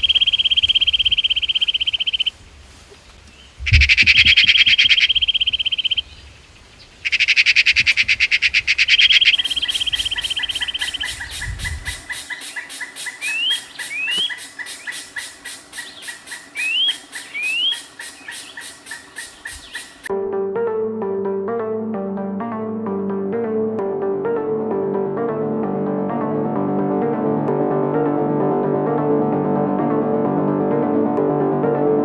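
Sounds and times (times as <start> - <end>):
pulsing animal call: 9.2 - 20.1
short rising chirps: 9.2 - 20.1
buzzing animal trills: 9.4 - 20.1.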